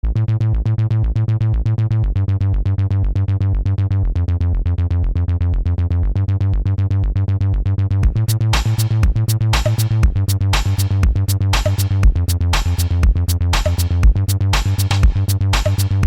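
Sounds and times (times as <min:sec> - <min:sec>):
upbeat electronic pop music: 0:08.0 - 0:16.0.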